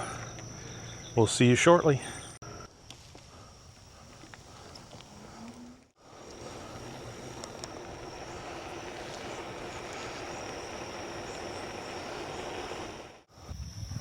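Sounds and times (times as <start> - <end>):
high insect drone: 0.0 - 14.0
faint motor hum: 2.2 - 13.3
bike tyres rolling on pavement: 2.9 - 13.3
wind noise: 3.5 - 14.0.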